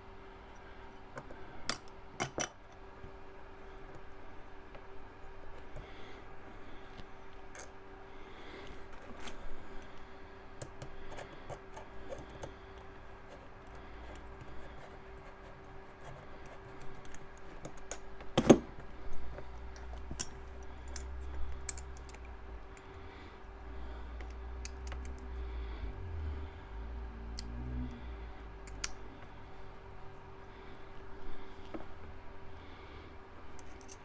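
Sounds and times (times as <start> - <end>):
metal knife parts clicking: 19.8 - 22.2.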